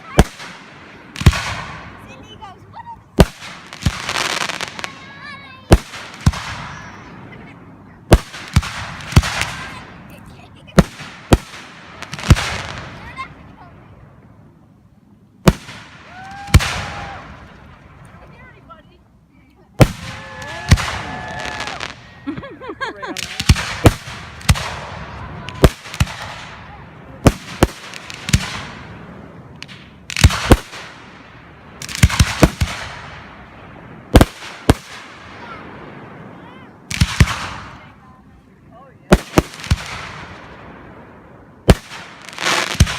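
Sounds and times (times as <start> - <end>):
fireworks bangs: 0.0 - 13.9, 15.4 - 18.4, 19.7 - 38.0, 39.0 - 42.9
crackling hiss of fireworks: 0.0 - 42.9.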